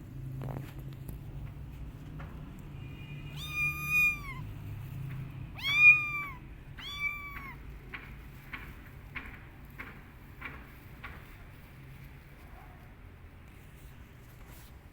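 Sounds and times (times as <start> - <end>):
kitten meowing: 3.3 - 4.5, 5.5 - 7.7.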